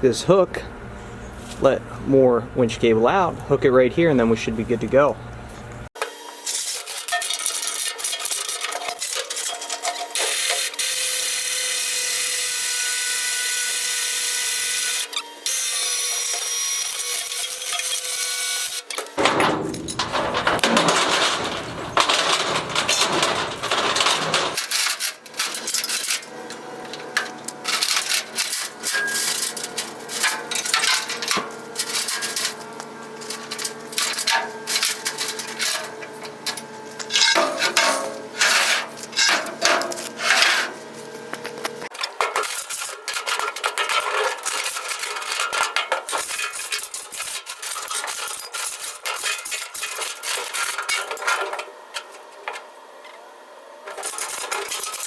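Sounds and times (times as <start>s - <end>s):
metal clanks: 19.0s - 40.8s.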